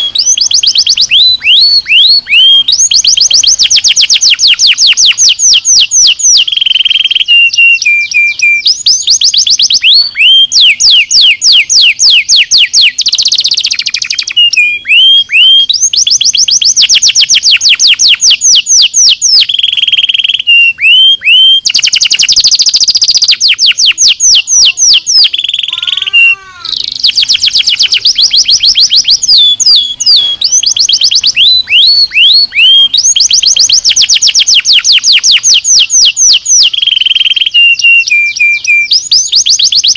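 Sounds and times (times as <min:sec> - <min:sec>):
canary singing trills: 0:00.0 - 0:39.9.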